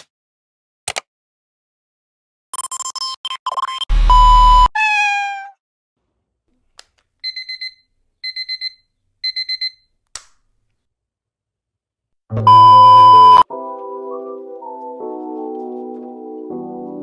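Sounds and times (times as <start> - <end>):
alarm clock beeping: 7.2 - 9.8, 12.4 - 13.4.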